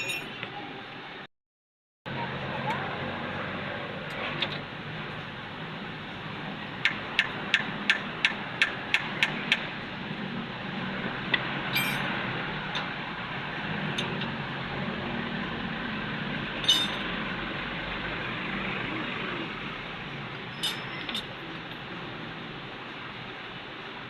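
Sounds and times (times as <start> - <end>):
metal tools clinking: 0.0 - 0.4, 11.7 - 12.1, 16.6 - 17.1, 20.6 - 21.4.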